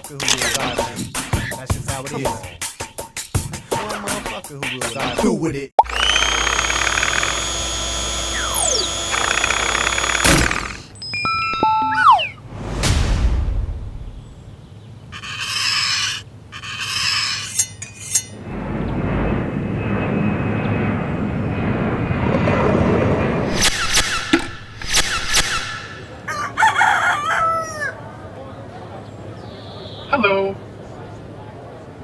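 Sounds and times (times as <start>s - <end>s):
sharp clicks: 5.8s - 11.0s
rooster crowing: 26.1s - 28.2s.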